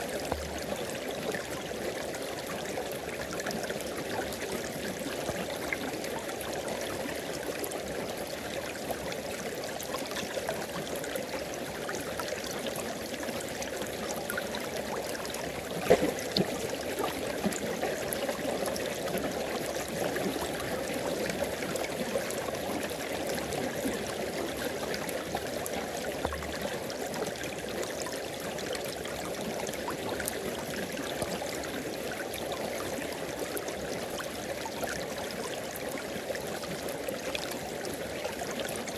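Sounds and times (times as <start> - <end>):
river water flowing: 12.6 - 25.8.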